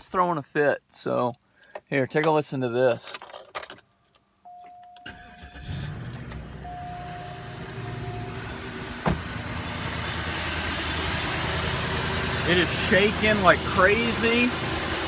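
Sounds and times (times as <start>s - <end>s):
car engine cranking and starting: 5.0s - 15.0s
engine idling with misfire: 5.1s - 15.0s.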